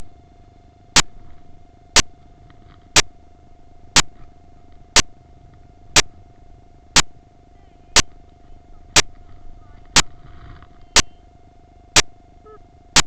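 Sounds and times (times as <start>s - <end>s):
faint steady hum: 0.0s - 13.0s
sharp evenly spaced clicks: 0.9s - 1.2s, 1.9s - 2.2s, 3.0s - 3.2s, 4.0s - 4.2s, 4.9s - 5.2s, 6.0s - 6.2s, 7.0s - 7.2s, 7.9s - 8.2s, 9.0s - 9.2s, 9.9s - 10.1s, 10.9s - 11.2s, 11.9s - 13.0s.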